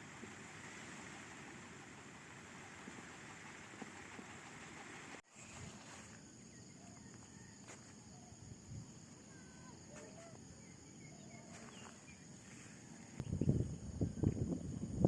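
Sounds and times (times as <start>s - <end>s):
faint bird chirps: 6.4s - 8.4s, 9.2s - 14.3s.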